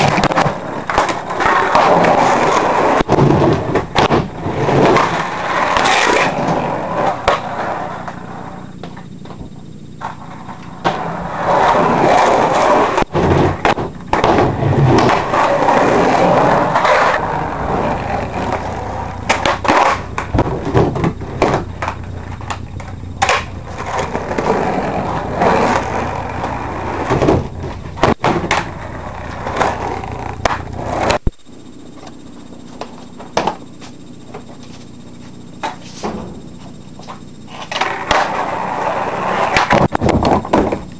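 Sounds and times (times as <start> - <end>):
skateboard wheels rolling on floor: 0.0 - 40.9
skateboard clacking on floor: 10.0 - 31.2, 37.0 - 40.9.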